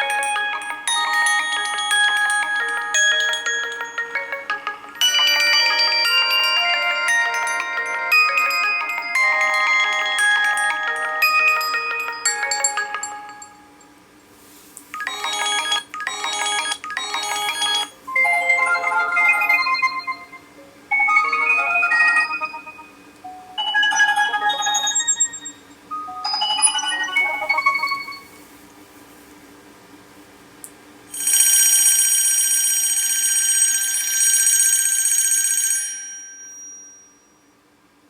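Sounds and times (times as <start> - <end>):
phone chiming melodies: 0.0 - 14.0, 14.9 - 28.5.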